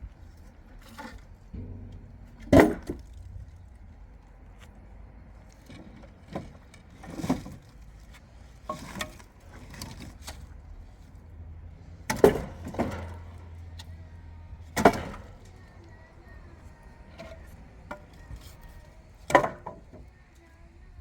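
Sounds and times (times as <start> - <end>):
low steady hum: 0.0 - 21.0
knocks and thumps: 1.6 - 3.7.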